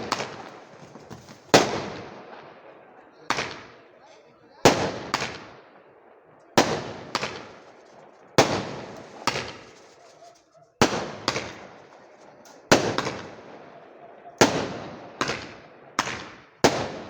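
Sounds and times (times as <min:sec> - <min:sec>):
firecrackers exploding: 0:00.0 - 0:17.0.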